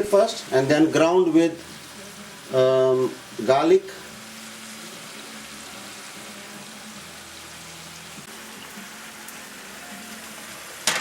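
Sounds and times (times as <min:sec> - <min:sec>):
chicken sizzling in a pan: 0:00.0 - 0:11.0.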